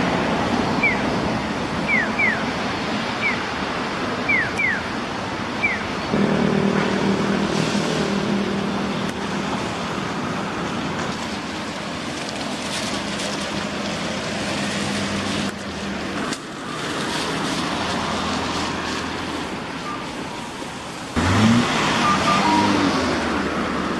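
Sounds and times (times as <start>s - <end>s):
vehicles passing: 0.0s - 23.9s
engine revving: 6.1s - 11.0s, 21.2s - 23.9s.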